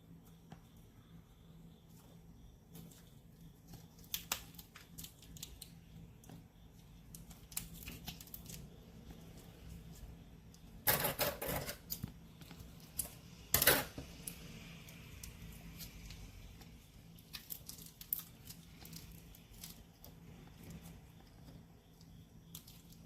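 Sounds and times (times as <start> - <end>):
sticky slime crackles and clicks: 3.8 - 5.8.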